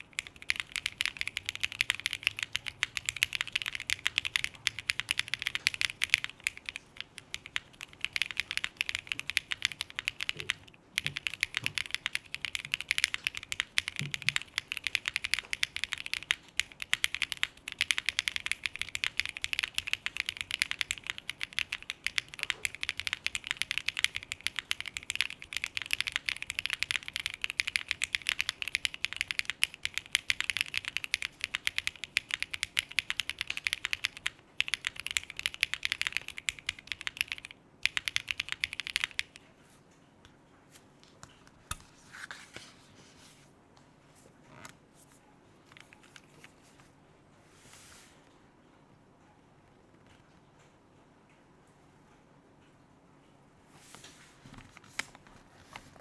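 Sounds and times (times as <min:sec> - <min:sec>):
mechanical keyboard typing: 0:00.0 - 0:39.5.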